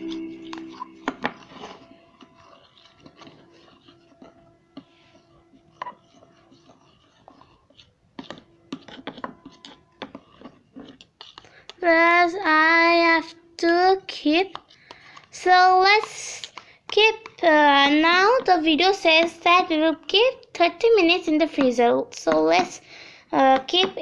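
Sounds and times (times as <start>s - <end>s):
utensil scraping a container: 0.0s - 11.8s, 14.2s - 18.5s.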